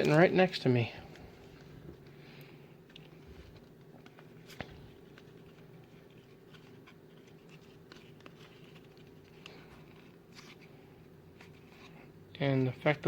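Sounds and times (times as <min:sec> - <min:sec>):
low room hum: 0:00.0 - 0:13.0
cards being flipped by hand: 0:01.1 - 0:13.0.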